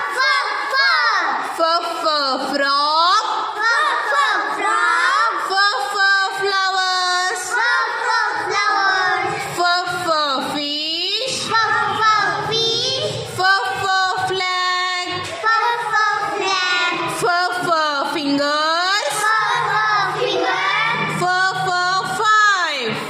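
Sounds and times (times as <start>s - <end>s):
child singing: 7.3s - 9.6s, 11.4s - 13.2s, 15.4s - 17.2s, 19.0s - 21.1s.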